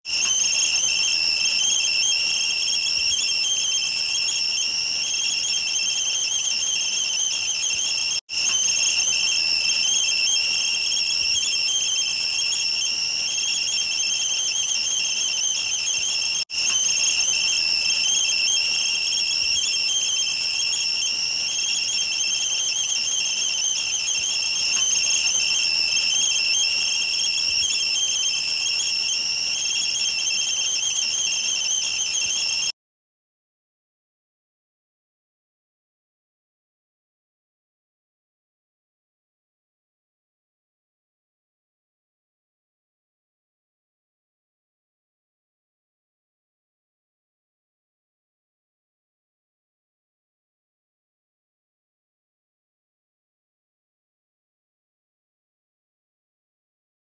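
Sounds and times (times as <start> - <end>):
kettle whistling: 0.1 - 32.8.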